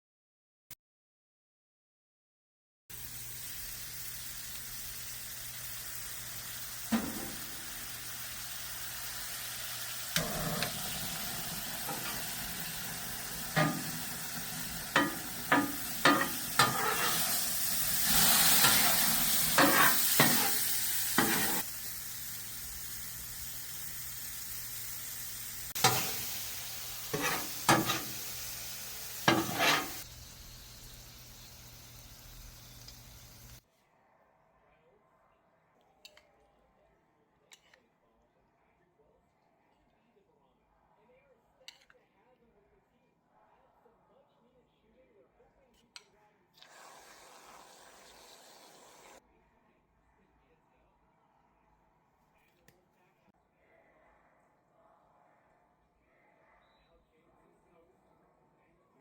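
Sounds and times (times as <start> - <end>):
fruit sizzling on a griddle: 2.9 - 33.6
spatula clicking on griddle: 13.5 - 17.4, 18.2 - 21.6, 25.8 - 26.4, 27.1 - 28.2, 29.2 - 30.0.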